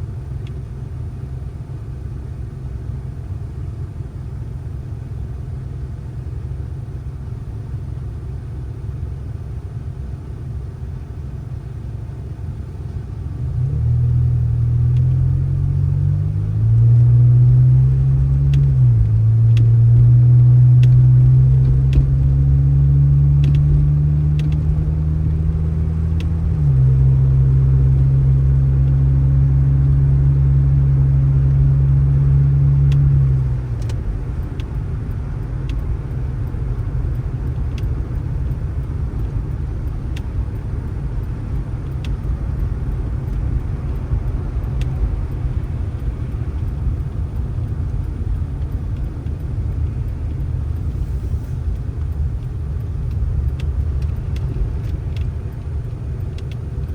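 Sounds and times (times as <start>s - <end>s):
low engine rumble: 0.0s - 56.9s
vehicle engine humming: 0.0s - 56.9s
faint ticks: 12.8s - 15.2s, 16.7s - 22.4s, 23.2s - 24.9s, 31.6s - 56.9s.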